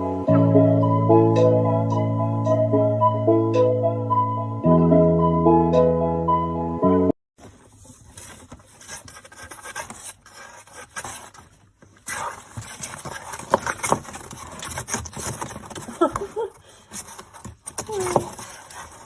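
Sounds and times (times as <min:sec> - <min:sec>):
scratching and rustling: 0:07.4 - 0:19.0.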